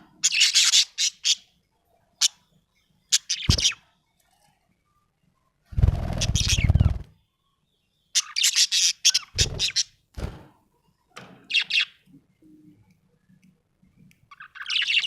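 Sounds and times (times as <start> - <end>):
budgerigar chirping: 3.1 - 3.8, 6.2 - 6.9.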